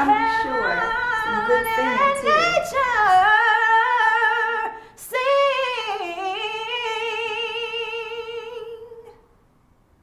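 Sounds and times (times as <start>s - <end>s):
woman singing with vibrato: 0.0s - 9.2s.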